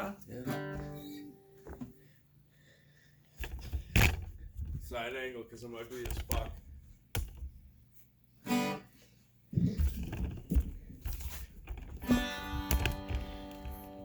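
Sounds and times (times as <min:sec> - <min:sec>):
knocks and taps on guitar: 0:11.3 - 0:14.0.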